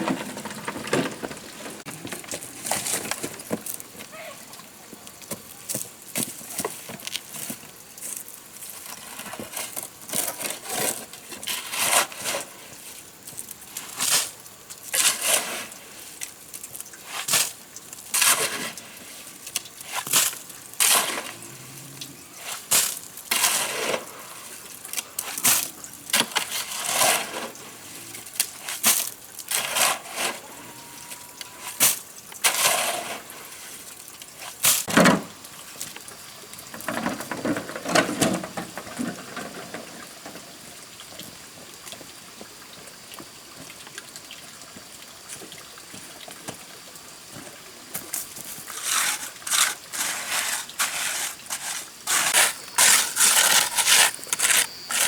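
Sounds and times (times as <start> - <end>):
stone and earth scraping and knocking: 0.0 - 4.2, 5.2 - 14.1, 28.4 - 33.3, 36.6 - 40.5, 47.9 - 55.0.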